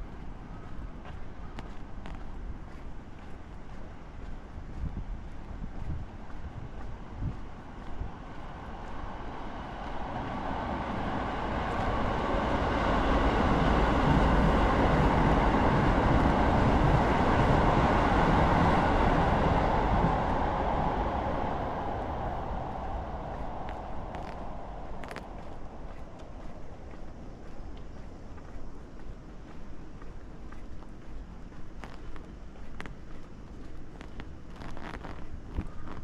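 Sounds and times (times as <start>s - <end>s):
faint steady whine: 0.0s - 36.0s
electric train passing: 7.5s - 27.8s.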